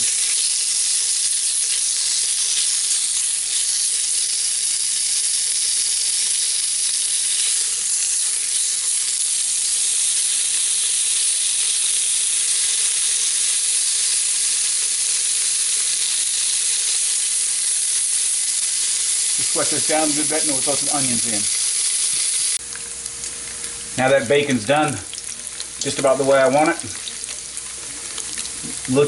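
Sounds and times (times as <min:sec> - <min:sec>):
bacon sizzling in a pot: 0:00.0 - 0:29.0.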